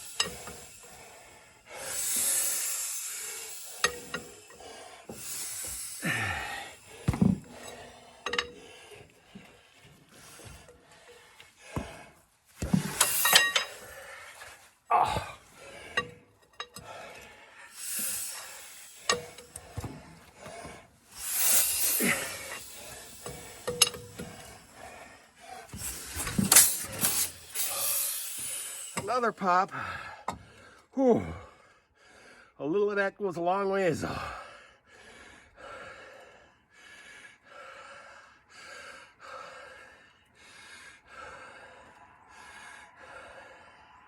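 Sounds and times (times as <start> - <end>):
engine crank clanking: 0.0 - 11.4, 12.6 - 14.5, 15.6 - 25.0, 25.7 - 29.2
person puffing with effort: 1.7 - 29.0.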